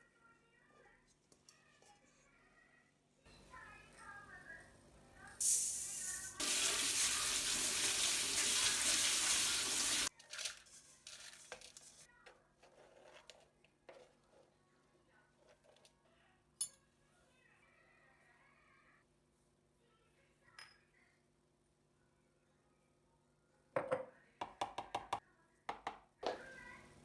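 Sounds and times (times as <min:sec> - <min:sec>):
kitchen tap running: 0:05.4 - 0:10.1.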